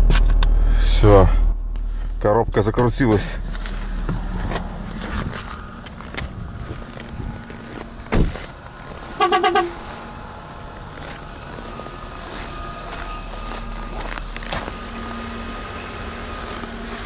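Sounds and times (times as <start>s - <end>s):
heavy thump: 0.0s - 8.8s
car engine idling: 0.0s - 17.0s
gearbox humming: 0.0s - 17.0s.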